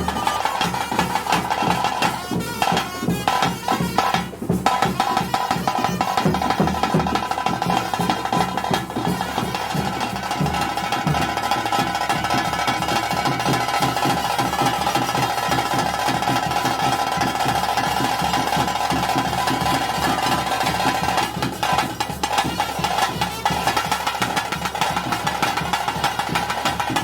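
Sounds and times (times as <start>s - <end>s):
rhythmic drumming: 0.0s - 27.0s.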